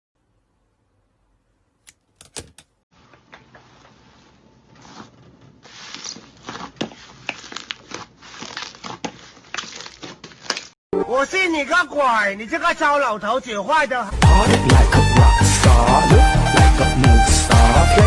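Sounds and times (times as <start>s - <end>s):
slime squishing: 5.7s - 10.7s.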